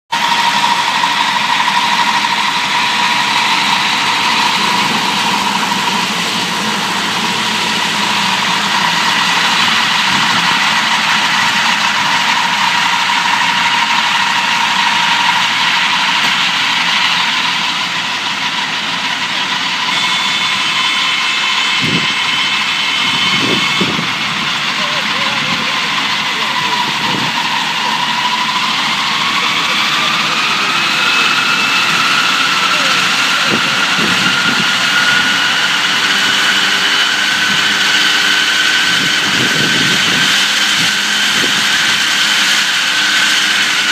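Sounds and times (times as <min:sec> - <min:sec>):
engine drone: 0:00.1 - 0:43.9
hay baler running: 0:00.1 - 0:43.9.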